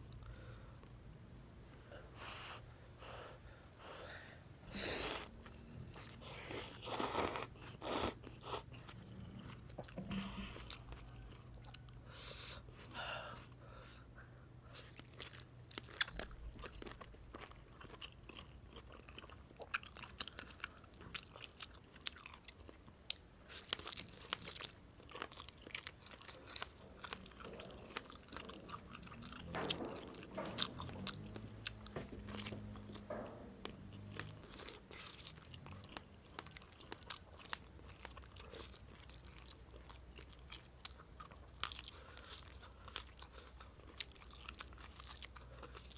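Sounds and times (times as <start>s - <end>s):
person eating noodle soup: 4.7s - 13.4s.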